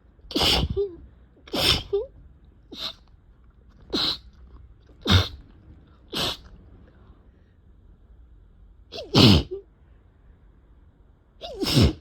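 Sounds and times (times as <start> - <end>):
person sneezing: 0.3 - 0.8, 1.5 - 2.0, 2.7 - 3.0, 3.9 - 4.2, 5.0 - 5.4, 6.1 - 6.4, 8.9 - 9.6, 11.4 - 12.0.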